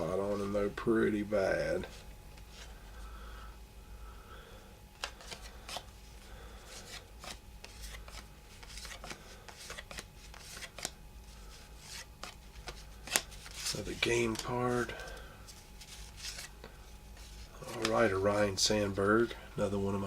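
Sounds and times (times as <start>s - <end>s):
cards rustling: 5.0s - 19.9s
cards clicking: 11.8s - 14.5s.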